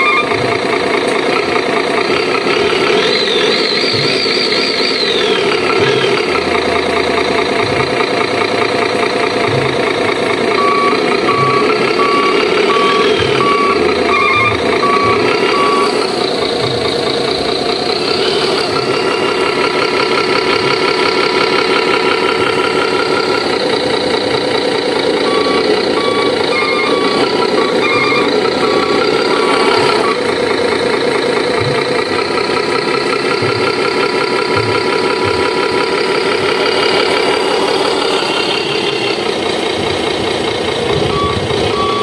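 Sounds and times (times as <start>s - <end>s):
reversing beeper beeps: 0.0s - 0.6s, 2.3s - 24.5s, 25.1s - 31.8s, 40.9s - 42.0s
simulated diesel engine through speaker: 0.0s - 42.0s.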